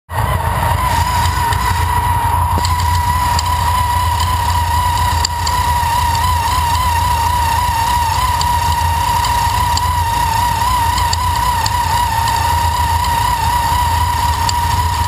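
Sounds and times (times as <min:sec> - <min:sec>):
car engine idling: 0:00.1 - 0:15.0
supercharger whine: 0:00.1 - 0:15.0
faint irregular ticks: 0:00.8 - 0:15.0.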